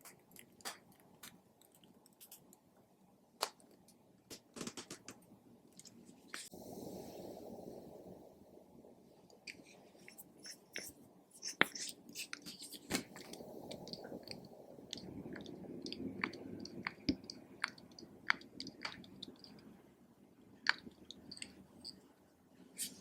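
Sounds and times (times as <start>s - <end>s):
slime squishing and popping: 12.9s - 19.6s.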